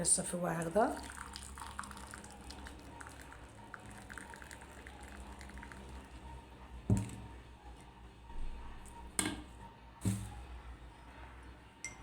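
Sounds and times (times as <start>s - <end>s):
tea pouring into a glass: 0.5s - 6.2s.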